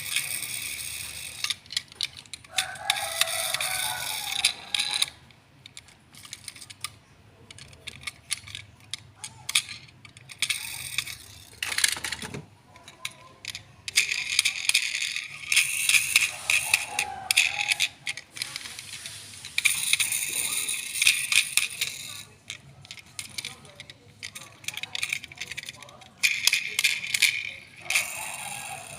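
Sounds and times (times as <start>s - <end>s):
toy car and packaging clicks and rattles: 0.0s - 28.9s.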